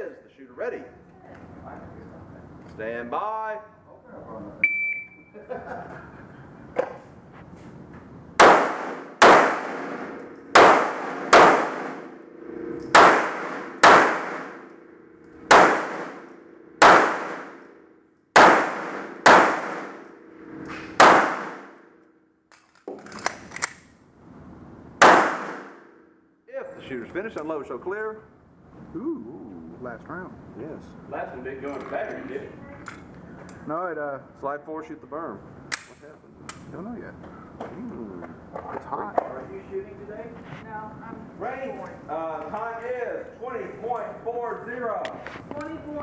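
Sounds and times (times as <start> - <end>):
shot timer beep: 4.6 - 5.3
pistol shots: 8.4 - 12.2, 12.9 - 14.7, 15.4 - 17.7, 18.3 - 20.1, 20.9 - 21.8, 25.0 - 25.8.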